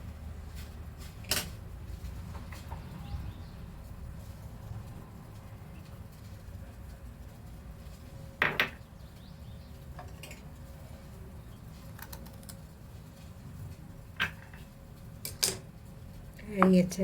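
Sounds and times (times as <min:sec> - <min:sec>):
kitchen utensils knocking and clinking: 0:08.4 - 0:08.8.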